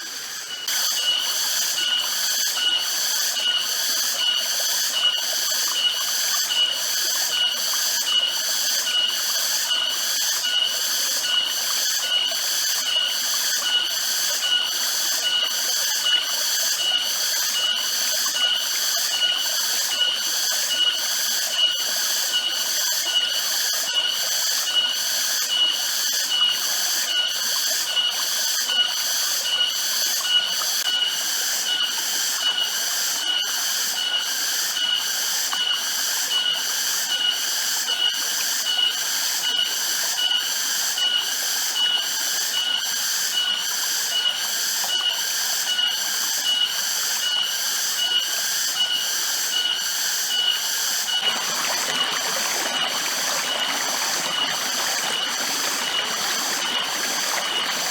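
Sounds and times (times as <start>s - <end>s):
cicadas pulsing chorus: 0.0s - 57.9s
rushing like running water: 40.8s - 57.9s.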